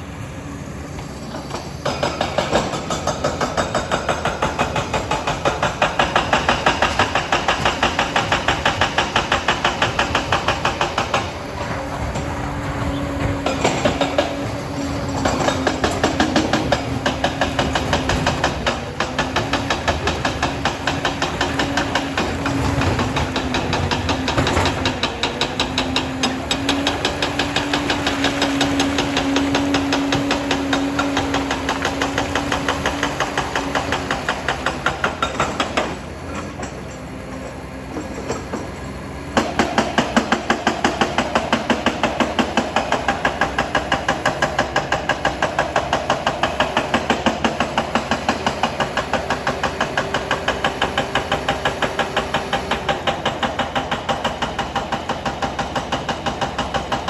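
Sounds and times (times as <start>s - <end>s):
steel tracks clanking: 0.0s - 57.0s
diesel engine running: 4.8s - 57.0s.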